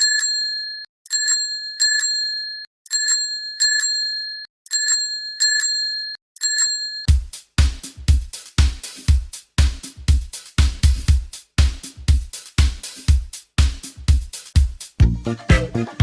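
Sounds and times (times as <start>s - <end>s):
dance music with heavy beat: 7.1s - 16.0s.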